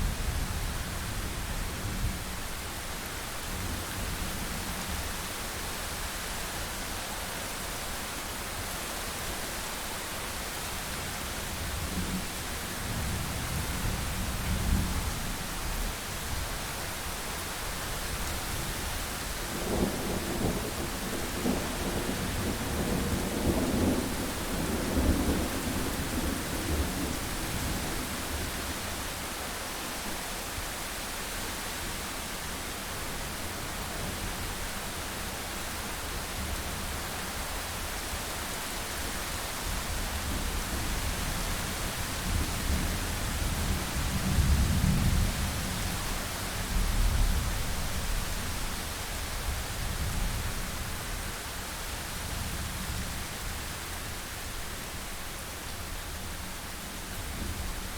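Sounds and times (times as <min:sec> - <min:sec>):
heavy rain hiss: 0:00.0 - 0:57.9
low thunder rumbling: 0:19.4 - 0:28.5.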